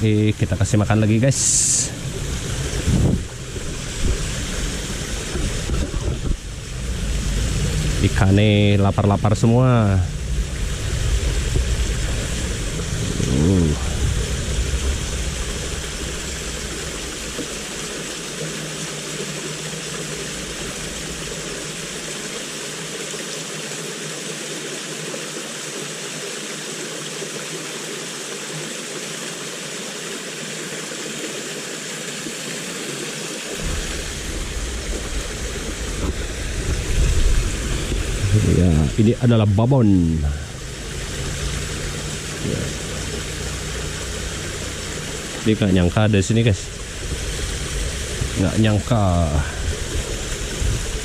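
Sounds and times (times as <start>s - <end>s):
low rumble: 0.0s - 22.1s, 33.6s - 51.0s
river water rushing: 0.0s - 51.0s.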